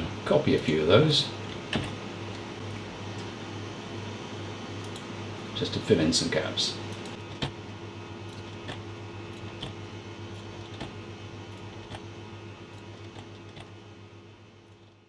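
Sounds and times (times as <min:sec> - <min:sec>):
computer humming: 0:00.0 - 0:15.0
mouse and keyboard clicks: 0:10.6 - 0:11.0, 0:11.8 - 0:12.0, 0:12.9 - 0:13.7.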